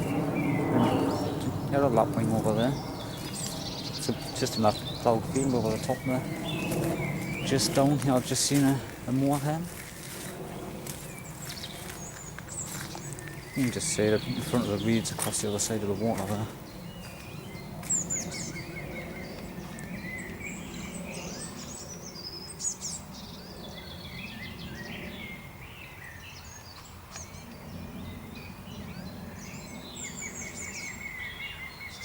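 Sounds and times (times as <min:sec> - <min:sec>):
low rumble: 0:00.0 - 0:21.4
birds calling and singing: 0:00.0 - 0:32.0.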